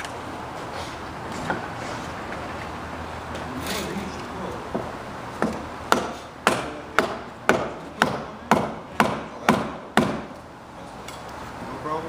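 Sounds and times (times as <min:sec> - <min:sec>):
hammering on wood: 0:04.7 - 0:10.4.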